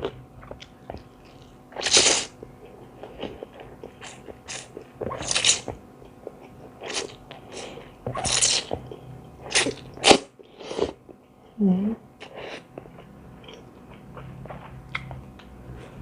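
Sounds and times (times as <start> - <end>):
crunchy bites and chewing: 3.5 - 7.2, 8.1 - 10.3.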